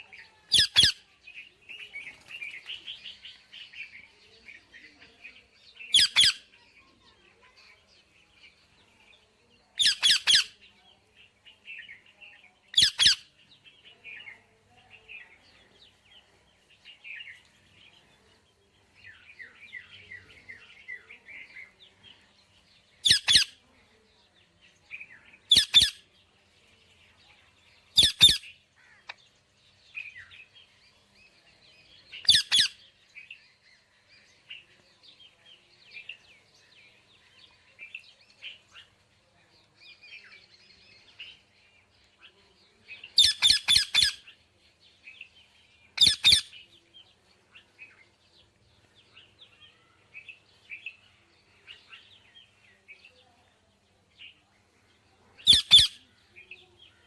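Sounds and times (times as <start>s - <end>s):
parrots chirping and chattering: 0.5s - 4.0s, 5.1s - 6.8s, 9.8s - 10.7s, 12.6s - 14.4s, 22.8s - 23.6s, 25.0s - 26.1s, 27.6s - 29.3s, 32.1s - 33.4s, 42.9s - 44.4s, 45.0s - 46.7s, 55.3s - 57.0s.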